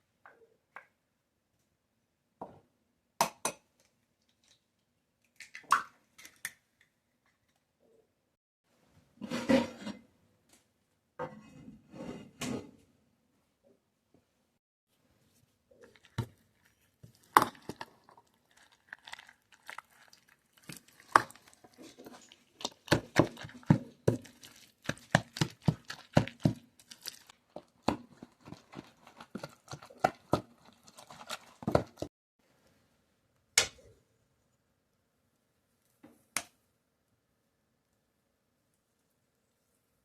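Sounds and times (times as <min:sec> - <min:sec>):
kitchenware clicks and scrapes: 0:09.2 - 0:10.0, 0:11.2 - 0:12.8.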